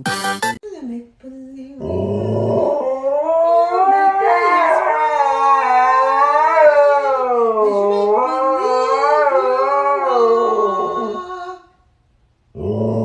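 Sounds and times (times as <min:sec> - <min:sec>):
dog howling: 0:02.5 - 0:11.7.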